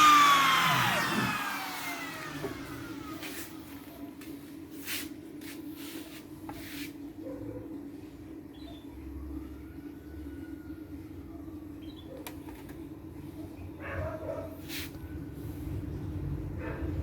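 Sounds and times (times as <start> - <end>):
machine humming: 0.0 - 3.9.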